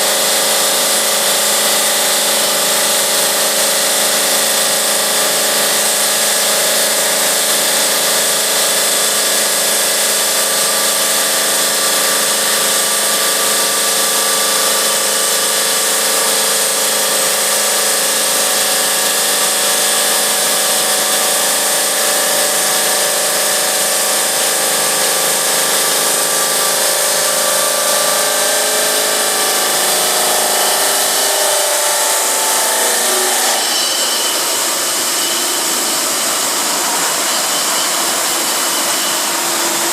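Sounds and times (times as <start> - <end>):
stone saw blade whining: 0.0 - 39.9.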